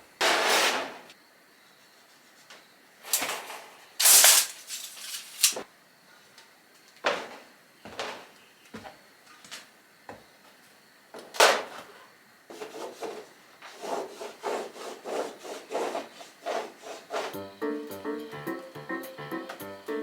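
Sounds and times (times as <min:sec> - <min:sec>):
rasping hand-tool strokes: 0:12.5 - 0:17.4
background music: 0:17.4 - 0:20.0.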